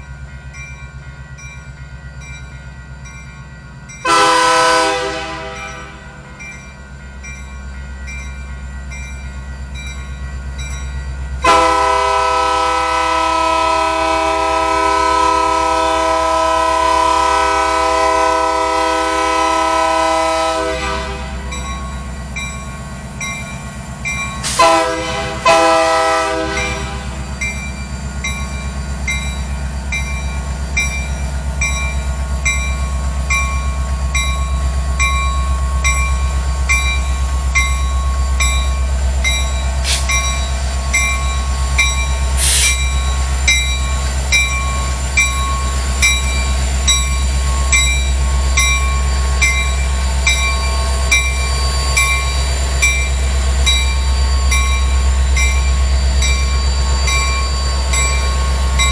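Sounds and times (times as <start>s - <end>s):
locomotive bell ringing: 0.0s - 58.9s
locomotive air horn blasts: 4.1s - 6.2s, 11.4s - 21.5s, 24.5s - 27.2s, 42.4s - 42.8s.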